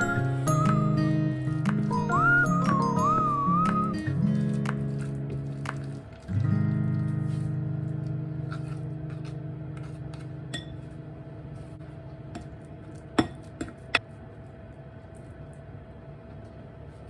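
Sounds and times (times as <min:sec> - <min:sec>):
background music chord: 0:00.0 - 0:04.1.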